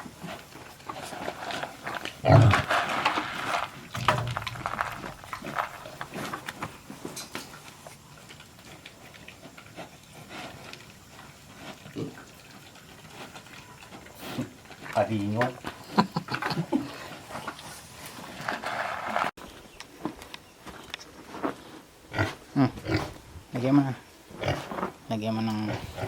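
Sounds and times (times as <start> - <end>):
pigs grunting: 0.0 - 3.1, 8.1 - 17.6, 22.1 - 23.2, 24.3 - 25.0.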